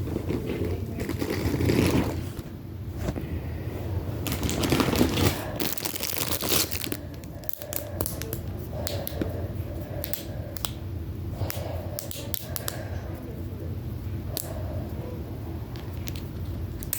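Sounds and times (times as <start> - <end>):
packaging crinkling and tearing: 0.2 - 2.3, 4.2 - 8.4.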